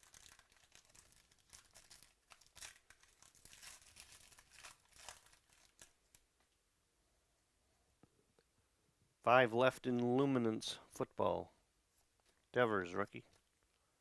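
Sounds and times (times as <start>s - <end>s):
wrapper crinkling and tearing: 0.0s - 6.3s.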